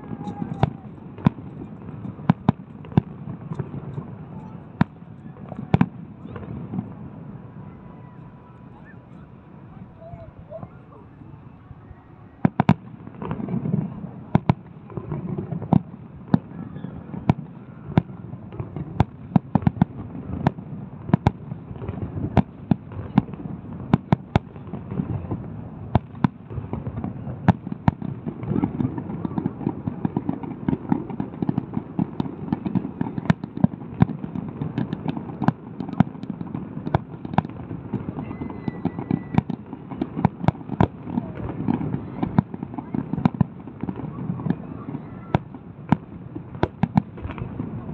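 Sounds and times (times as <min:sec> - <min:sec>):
fireworks bangs: 0:00.0 - 0:47.9.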